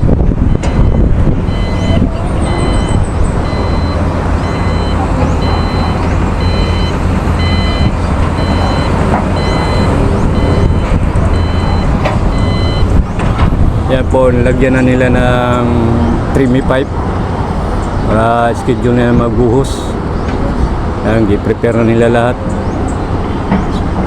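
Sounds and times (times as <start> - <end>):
heavy machinery engine rumble: 0.0 - 24.0
reversing alarm beeping: 0.4 - 13.0.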